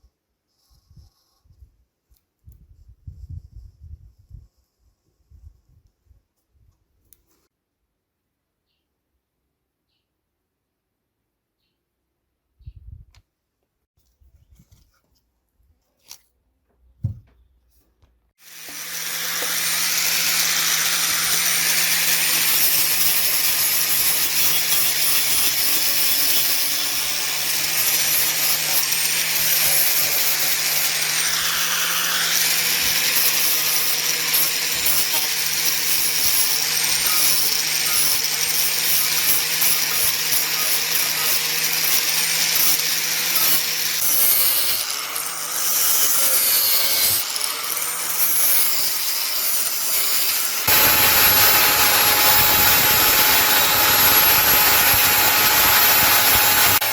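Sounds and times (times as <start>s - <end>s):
power tool grinding: 18.4s - 56.9s.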